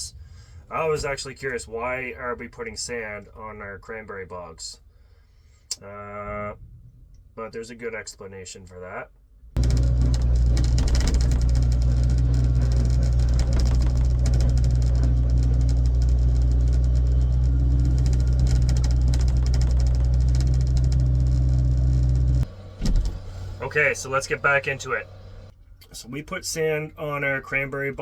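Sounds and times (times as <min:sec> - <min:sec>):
heavy equipment engine droning: 0:09.6 - 0:25.5.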